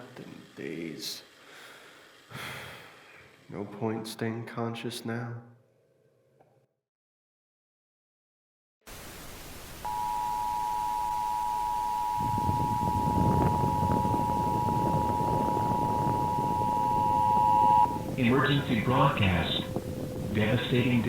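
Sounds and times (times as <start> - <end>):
static hiss: 8.9 - 12.7
rumbling crackle of static: 8.9 - 21.0
two-tone alarm: 9.8 - 21.0.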